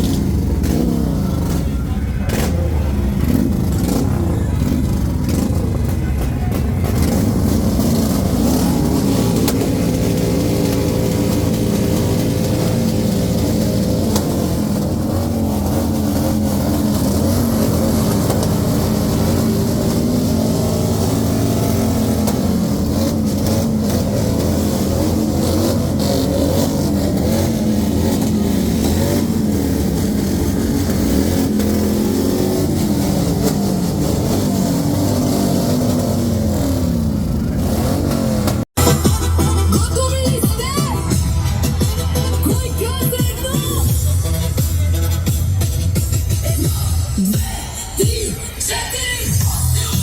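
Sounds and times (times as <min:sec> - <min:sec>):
vehicle engines revving: 0:00.0 - 0:50.0.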